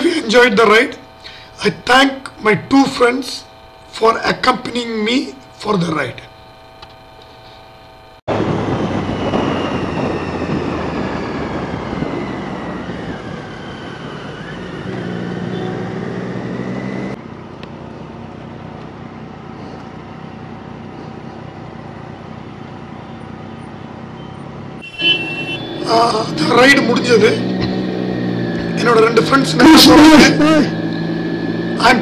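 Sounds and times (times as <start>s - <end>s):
wind and road noise: 8.3s - 32.0s.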